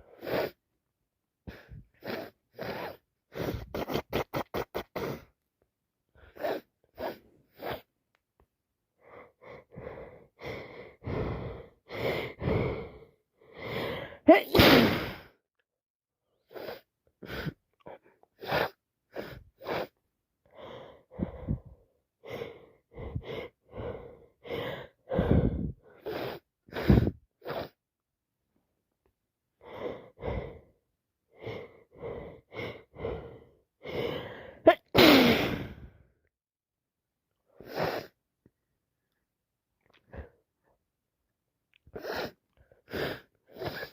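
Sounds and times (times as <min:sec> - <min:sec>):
gasping in-breaths: 0:09.0 - 0:15.4, 0:16.4 - 0:27.8, 0:29.6 - 0:36.1, 0:41.9 - 0:43.9
woman sneezing: 0:14.3 - 0:15.2, 0:34.7 - 0:35.8.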